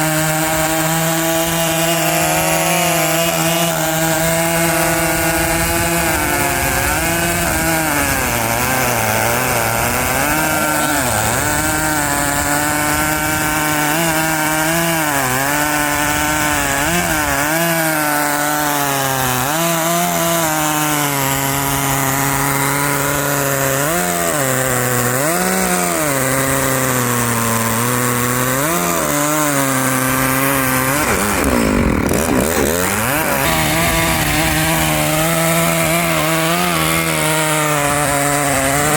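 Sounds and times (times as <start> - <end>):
chainsaw cutting log: 0.0 - 38.9.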